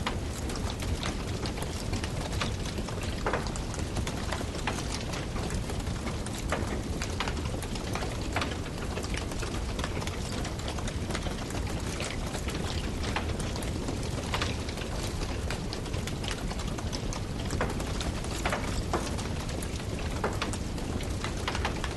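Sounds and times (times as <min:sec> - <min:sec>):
wood fire crackling: 0:00.0 - 0:01.4
low rumble of fire: 0:00.0 - 0:21.9.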